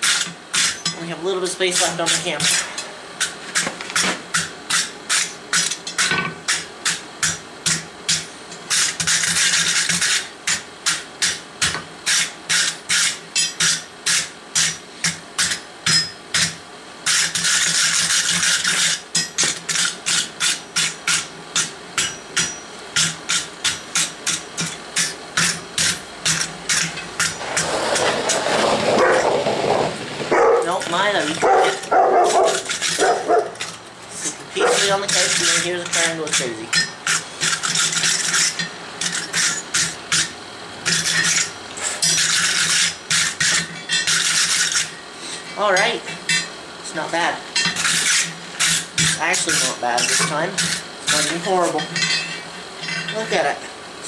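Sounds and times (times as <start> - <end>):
rasping scraping: 25.4 - 39.6.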